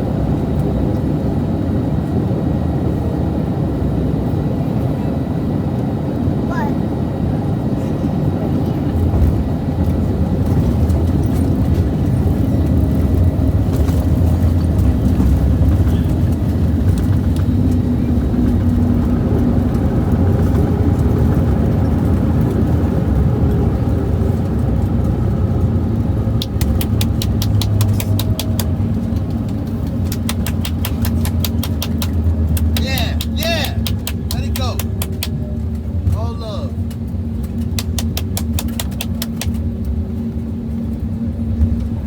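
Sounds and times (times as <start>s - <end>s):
aircraft cabin rumble: 0.0s - 42.0s
rapid clicks: 26.4s - 29.3s, 30.0s - 35.4s.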